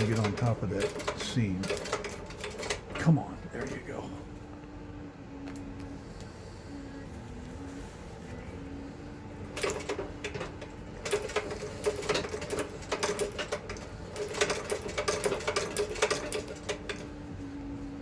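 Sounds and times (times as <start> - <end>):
treadle sewing machine clicking: 0.0 - 3.8, 9.5 - 17.2.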